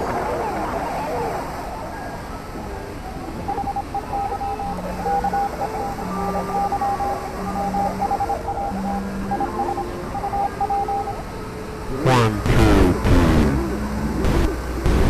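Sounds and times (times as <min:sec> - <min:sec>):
steady hiss: 0:00.0 - 0:15.0
long low tone: 0:04.6 - 0:14.9.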